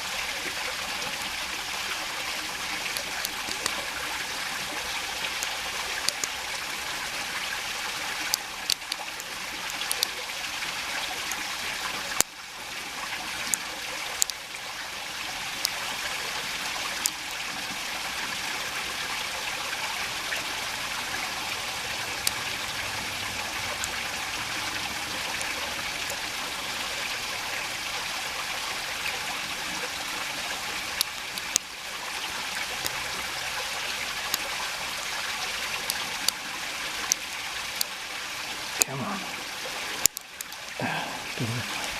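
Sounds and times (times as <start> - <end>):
creek water trickling: 0.0 - 41.9
small sharp clicks: 5.4 - 6.4, 8.3 - 10.2, 14.2 - 14.4, 31.0 - 31.7, 40.0 - 40.6.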